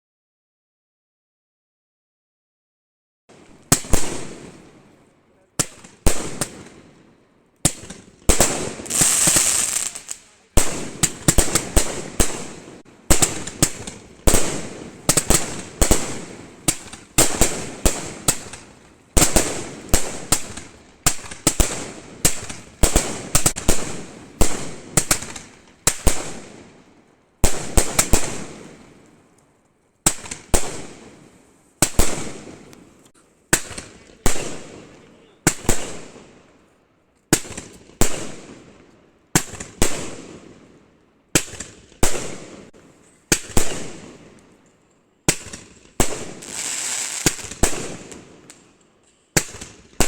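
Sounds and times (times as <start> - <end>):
firework cake launching and bursting: 7.7 - 24.0, 45.4 - 48.1
firework crackle: 7.7 - 26.4, 45.3 - 48.6.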